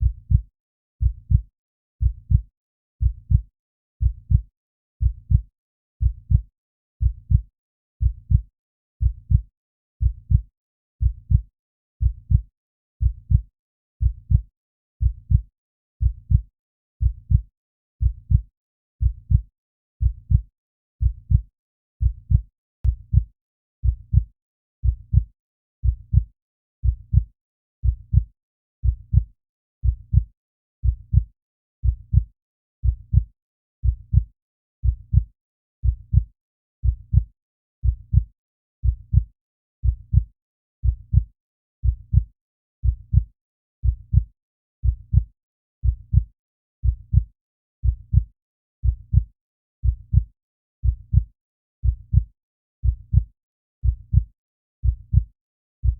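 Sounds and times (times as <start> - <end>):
heartbeat thuds: 0.0 - 0.4, 1.0 - 1.4, 2.0 - 2.4, 3.0 - 3.4, 5.0 - 5.4, 8.0 - 8.4, 22.0 - 23.3, 23.9 - 38.3, 40.1 - 47.2, 47.8 - 54.2, 54.8 - 55.9.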